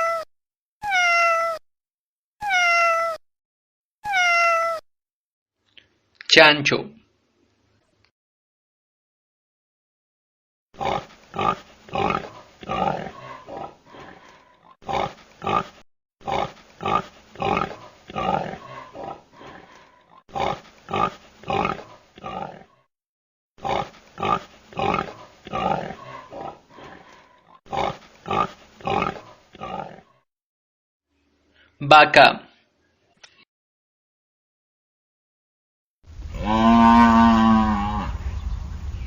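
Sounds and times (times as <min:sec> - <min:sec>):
pig grunting: 0:10.8 - 0:22.8, 0:23.6 - 0:30.2.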